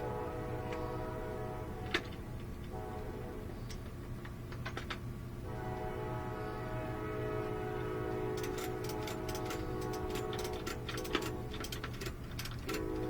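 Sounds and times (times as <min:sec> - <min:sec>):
truck engine droning: 0:05.5 - 0:13.0
sharp metallic clicks: 0:08.3 - 0:13.0.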